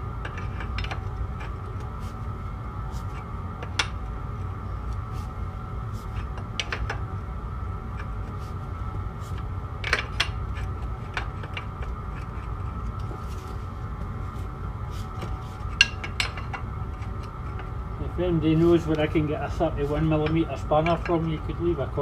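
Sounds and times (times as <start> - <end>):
steady hum: 0.0 - 22.0.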